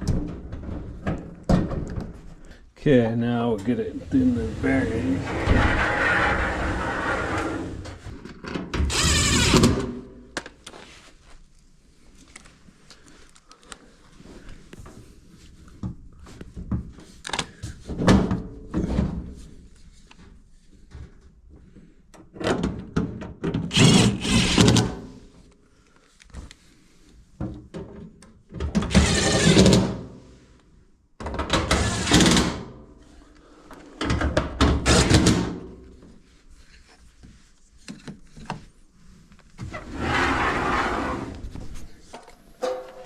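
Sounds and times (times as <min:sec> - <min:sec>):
washer parts clunking and scraping: 0:42.2 - 0:43.0.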